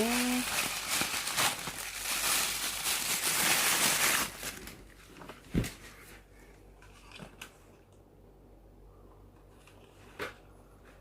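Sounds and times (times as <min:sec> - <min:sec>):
plastic packaging rustling: 0:00.0 - 0:07.5.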